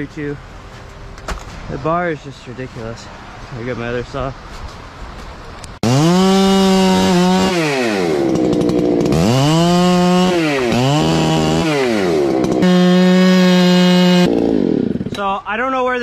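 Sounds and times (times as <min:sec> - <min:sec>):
chainsaw engine revving: 0:05.8 - 0:15.2.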